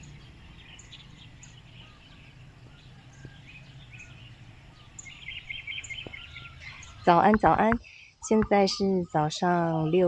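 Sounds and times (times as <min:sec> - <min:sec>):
birds chirping and calling: 0:00.0 - 0:10.0.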